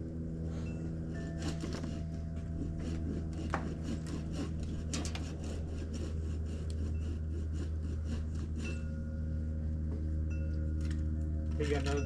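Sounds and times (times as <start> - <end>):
low engine hum: 0.0 - 12.0
hand saw cutting branch: 1.1 - 9.0.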